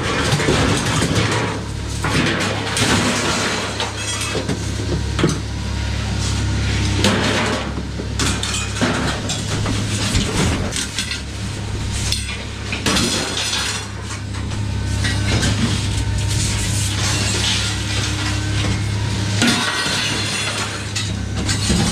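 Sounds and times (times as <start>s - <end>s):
low hum: 8.2s - 21.9s.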